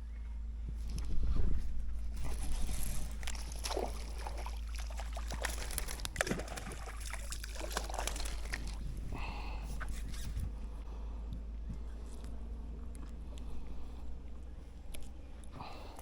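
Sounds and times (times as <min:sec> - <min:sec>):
steady low hum: 0:00.0 - 0:16.0
water sloshing and trickling: 0:00.8 - 0:10.6.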